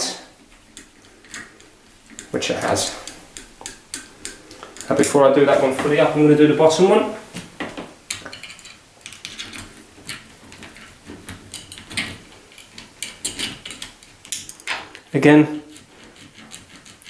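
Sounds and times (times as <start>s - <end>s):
metallic clicks and scrapes of screw: 0.8s - 5.0s, 8.1s - 15.0s, 15.6s - 17.0s.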